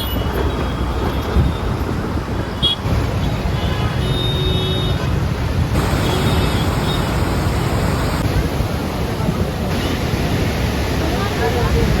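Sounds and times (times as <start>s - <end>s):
heavy rain: 2.8s - 12.0s
running water: 5.4s - 12.0s.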